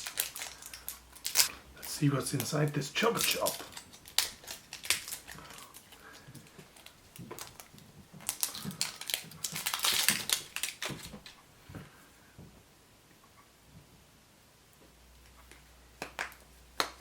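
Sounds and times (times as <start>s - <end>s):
wrapper crinkling: 0.0s - 11.4s.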